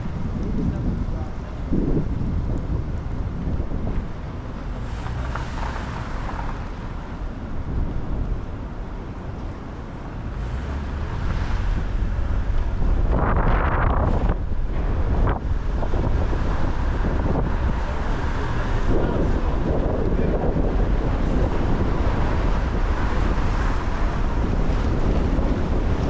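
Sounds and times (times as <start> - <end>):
road and wind noise: 0.0 - 26.0.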